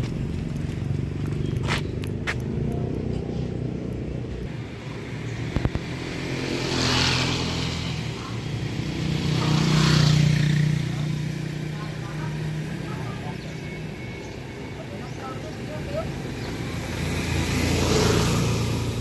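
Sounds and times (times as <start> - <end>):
hiss of vehicles passing: 4.4 - 11.1, 16.2 - 19.0.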